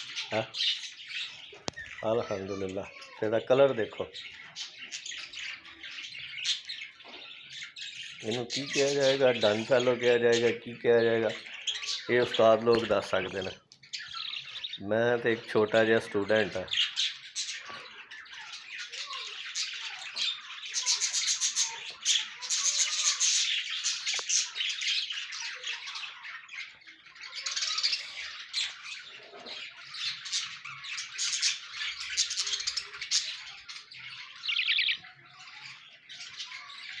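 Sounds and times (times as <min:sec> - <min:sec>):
budgerigars chattering and squawking: 0:00.0 - 0:37.0
rapid rasping squawks: 0:16.7 - 0:37.0.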